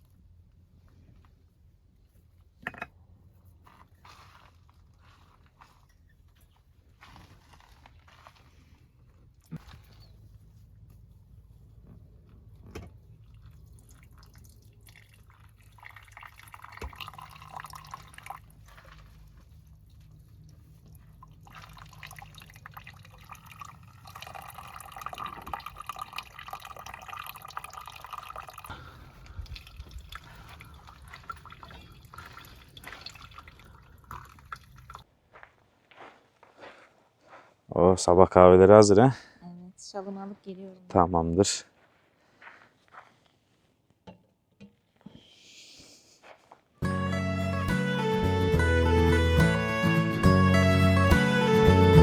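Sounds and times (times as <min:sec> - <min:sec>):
water bubbling and dripping: 0:13.2 - 0:19.0, 0:21.2 - 0:35.0.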